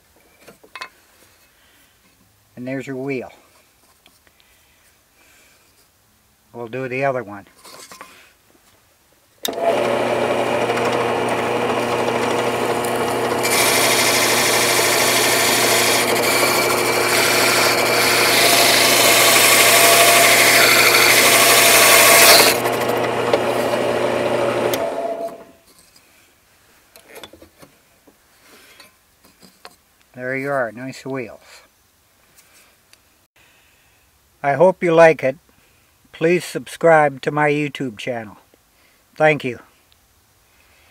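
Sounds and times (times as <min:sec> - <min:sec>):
hole saw rasping into wood: 0:09.5 - 0:25.4
drill press motor humming: 0:09.5 - 0:25.5.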